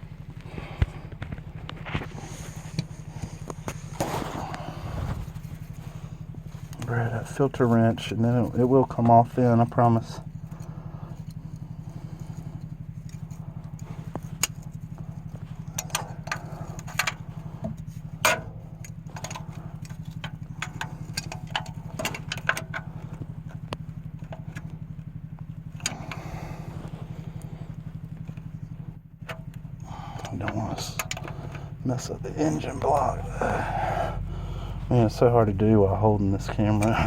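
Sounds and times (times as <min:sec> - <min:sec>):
low mechanical hum: 0:00.0 - 0:37.0.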